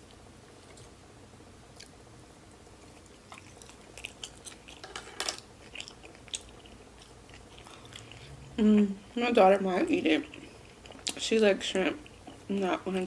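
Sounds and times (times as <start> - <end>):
person chewing food: 1.7 - 9.2, 10.0 - 11.2, 11.9 - 12.5.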